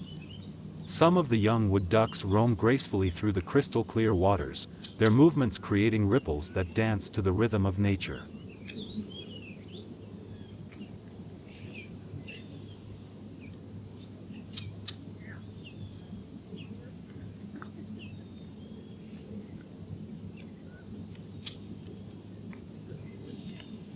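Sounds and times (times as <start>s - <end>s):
steady low hum: 0.9s - 8.3s
faint bird chirps: 4.6s - 5.9s, 21.8s - 22.5s
high-pitched bird calls: 4.7s - 6.9s.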